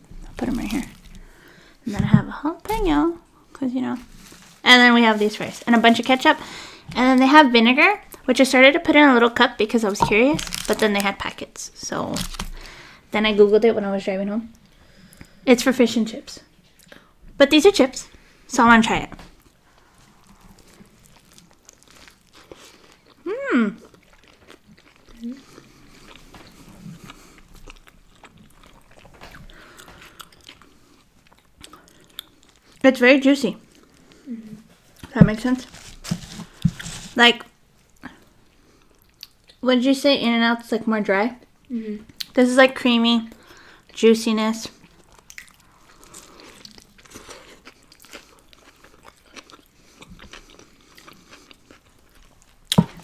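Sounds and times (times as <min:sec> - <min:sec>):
food crunching: 0:00.0 - 0:01.9, 0:02.7 - 0:12.9, 0:19.2 - 0:32.8, 0:33.6 - 0:38.2, 0:44.7 - 0:53.0
wet chewing: 0:00.0 - 0:01.9, 0:09.2 - 0:12.9, 0:19.3 - 0:32.8, 0:44.7 - 0:53.0.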